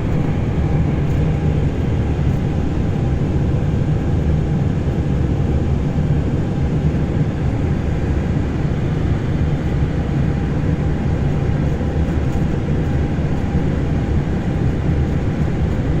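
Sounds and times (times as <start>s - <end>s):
airliner engines idling rumble: 0.0s - 16.0s.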